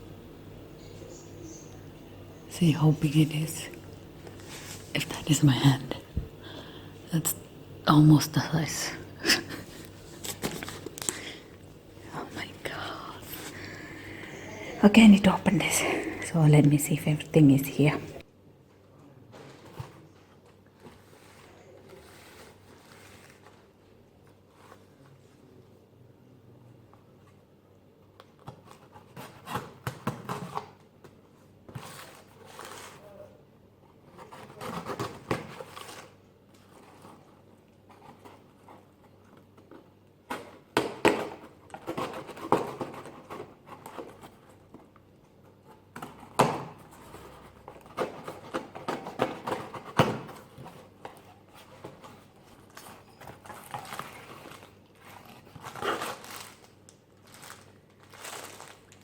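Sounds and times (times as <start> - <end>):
packaging rustling and crinkling: 9.5 - 11.7, 20.6 - 25.0, 31.8 - 33.0, 34.2 - 40.6, 45.7 - 59.0.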